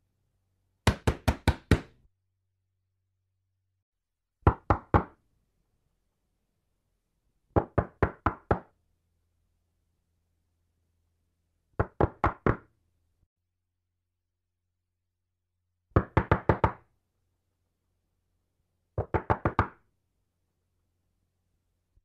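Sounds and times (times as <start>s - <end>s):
knocking on a door: 0.8s - 2.0s, 15.9s - 16.8s, 19.0s - 19.8s.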